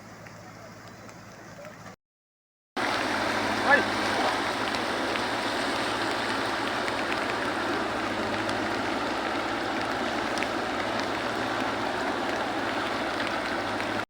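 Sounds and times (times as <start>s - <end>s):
heavy rain and rushing floodwater: 2.8s - 14.0s.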